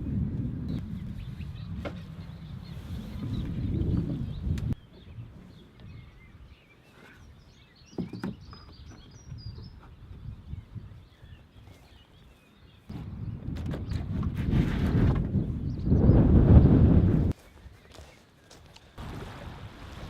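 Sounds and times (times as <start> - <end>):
wind buffeting microphone: 0.0 - 6.7, 8.4 - 17.5
small birds chirping: 0.7 - 14.1, 17.3 - 19.0.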